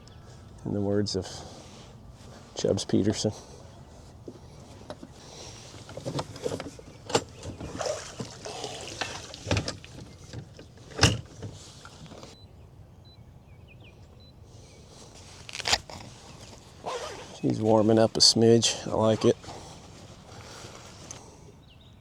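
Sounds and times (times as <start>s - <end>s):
gear knocking and clicking in boat: 4.2s - 12.4s.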